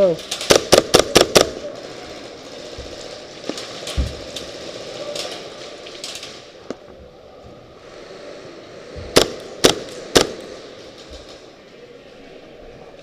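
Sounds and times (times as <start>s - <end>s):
airsoft guns firing: 0.3s - 2.0s, 9.1s - 10.6s.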